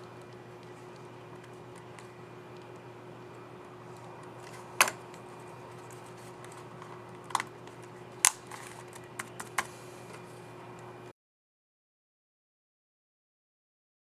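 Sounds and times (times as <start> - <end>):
faint steady hum: 0.0 - 11.1.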